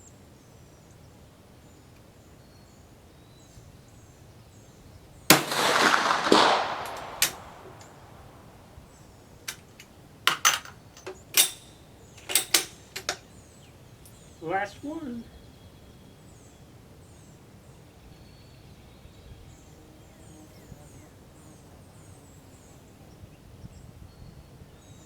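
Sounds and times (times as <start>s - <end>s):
rifle bolt clicking and clacking: 5.3s - 8.0s, 10.3s - 11.6s, 12.2s - 13.2s
rifle shot echoing: 5.3s - 8.7s.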